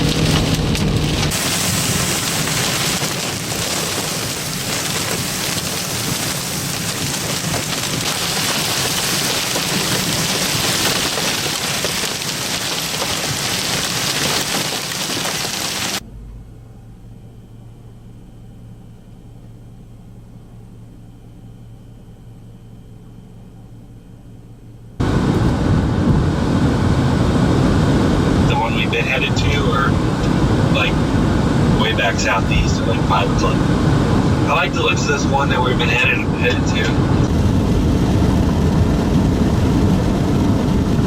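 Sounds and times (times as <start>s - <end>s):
hail and heavy rain on a vehicle: 0.0s - 16.0s, 28.3s - 41.0s
vehicle hum: 0.0s - 41.0s.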